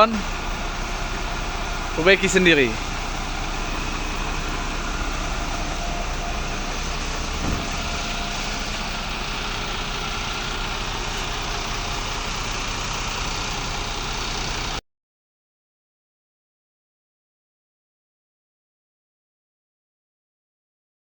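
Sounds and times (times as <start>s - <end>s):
truck engine idling: 0.0s - 14.8s
knock: 7.4s - 7.8s.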